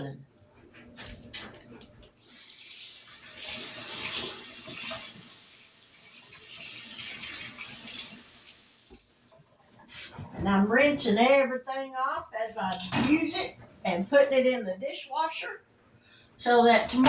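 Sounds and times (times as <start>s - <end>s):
faucet water running: 2.2s - 9.2s.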